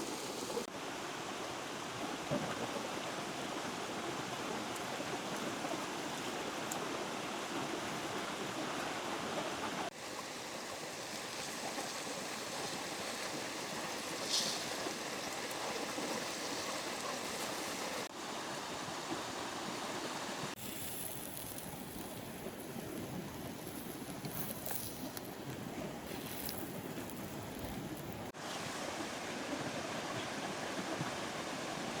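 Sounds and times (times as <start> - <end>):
river water rushing: 2.9 - 20.6.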